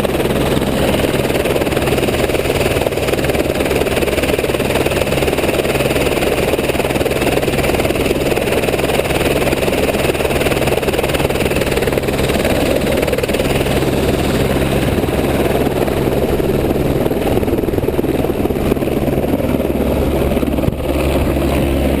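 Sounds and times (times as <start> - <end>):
continuous rushing noise: 0.0 - 22.0
helicopter engine and rotor drone: 0.0 - 22.0.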